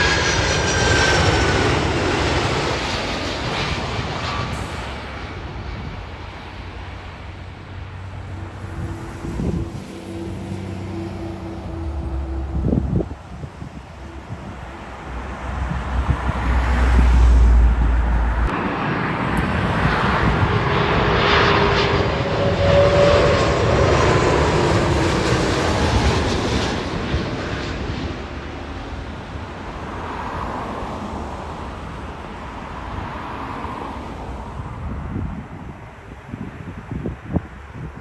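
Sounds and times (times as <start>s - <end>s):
jet engines passing by: 0.0s - 38.0s
wind rumbling on microphone: 0.0s - 38.0s
faint whining tone: 8.0s - 18.4s.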